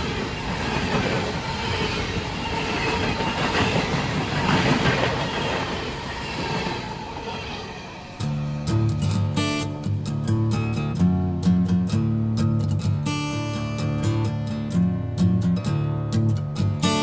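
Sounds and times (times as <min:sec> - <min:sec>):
train cars rumbling on rails: 0:00.0 - 0:10.0
acoustic guitar music: 0:08.2 - 0:17.0.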